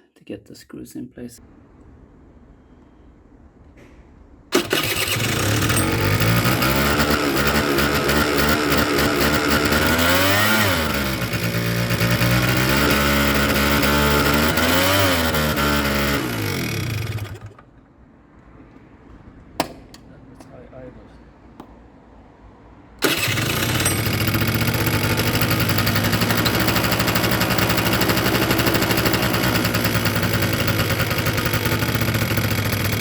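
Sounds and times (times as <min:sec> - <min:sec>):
scooter engine starting and revving: 0:04.5 - 0:17.8, 0:23.0 - 0:33.0.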